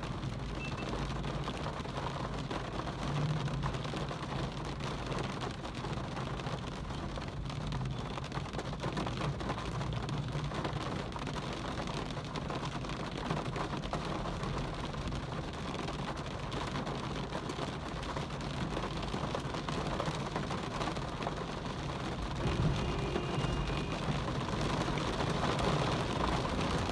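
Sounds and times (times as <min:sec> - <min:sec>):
steady rain falling: 0:00.0 - 0:26.9
brief pitched sound: 0:22.4 - 0:24.2.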